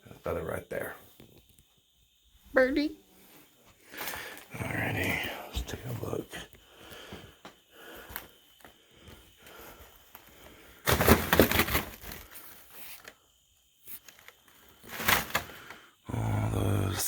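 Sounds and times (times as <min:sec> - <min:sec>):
rustling and crinkling handling: 0:08.0 - 0:13.2, 0:13.8 - 0:15.8.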